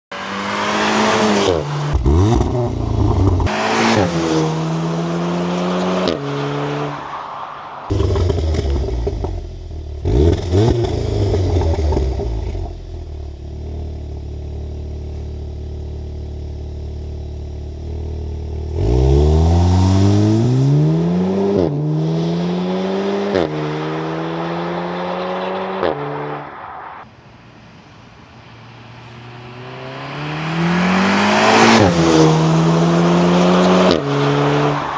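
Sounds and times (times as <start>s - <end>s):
car engine accelerating through upshifts: 0.1s - 7.0s, 7.9s - 12.8s, 18.1s - 26.7s, 28.8s - 34.9s.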